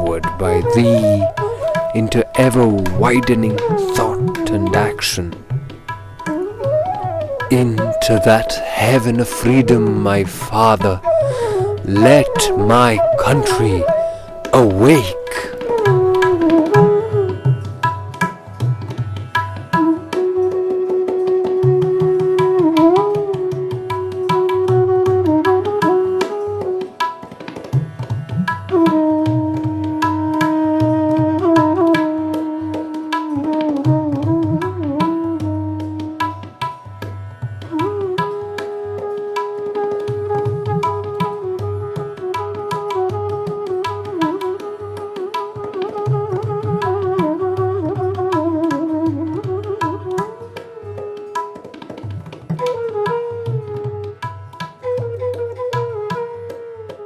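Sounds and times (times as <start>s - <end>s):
melody instrument sliding notes: 0.0s - 5.3s, 6.4s - 17.3s
tabla rhythm: 0.0s - 57.0s.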